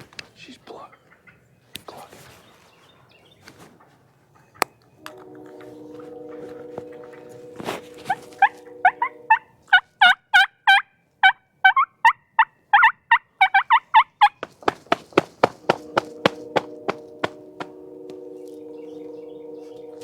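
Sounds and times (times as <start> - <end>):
turkey clucking: 0.7 - 1.5, 8.1 - 16.7
steady low hum: 5.0 - 9.4, 14.6 - 20.0
wild turkey yelping: 8.4 - 14.5.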